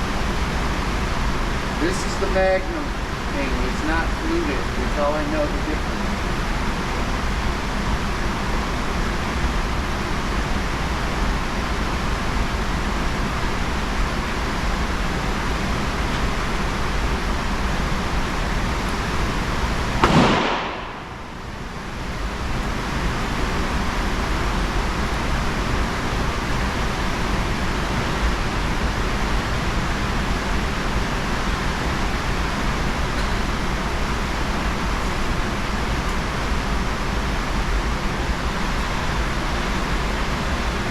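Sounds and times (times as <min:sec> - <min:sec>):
steady hissing noise: 0:00.0 - 0:40.9
revolver gunshot: 0:20.0 - 0:21.4.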